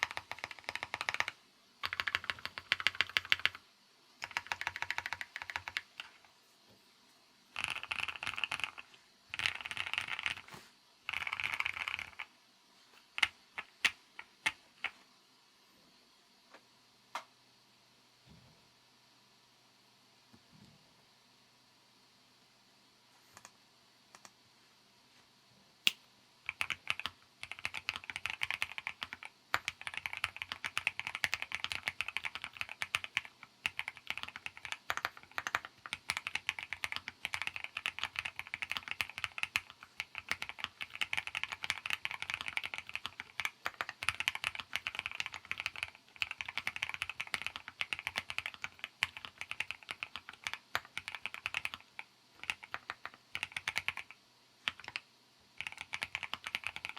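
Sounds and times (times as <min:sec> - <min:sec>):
faint keyboard clicks: 0:00.0 - 0:03.6, 0:23.3 - 0:24.4, 0:25.8 - 0:56.9
mechanical keyboard typing: 0:00.0 - 0:03.6, 0:04.2 - 0:06.2, 0:07.5 - 0:10.5, 0:11.1 - 0:12.3, 0:13.1 - 0:15.0, 0:26.5 - 0:56.9.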